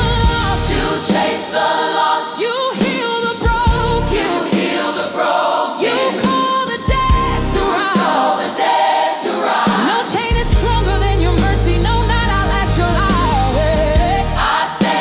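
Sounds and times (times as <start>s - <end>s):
deep steady bass: 0.0s - 0.9s, 10.4s - 14.5s
worship music with choir singing: 0.0s - 15.0s.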